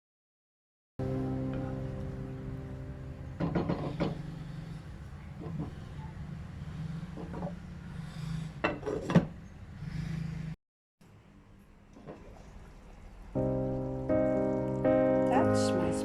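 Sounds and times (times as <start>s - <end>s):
steady low hum: 1.0s - 8.0s.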